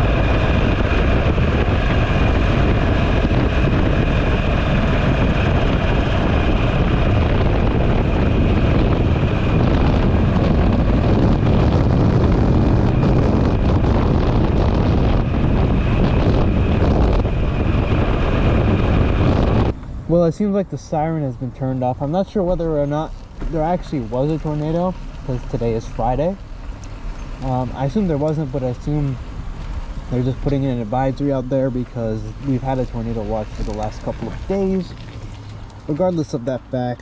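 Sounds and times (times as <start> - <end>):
motorcycle engine running: 0.0 - 20.0, 22.0 - 36.4
wind buffeting microphone: 0.0 - 37.0.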